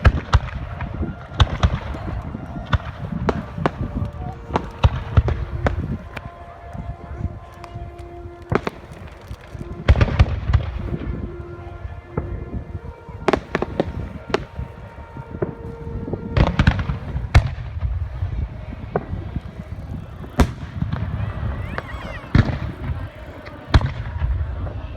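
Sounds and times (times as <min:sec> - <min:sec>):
fireworks sharp bangs: 0:00.0 - 0:24.9.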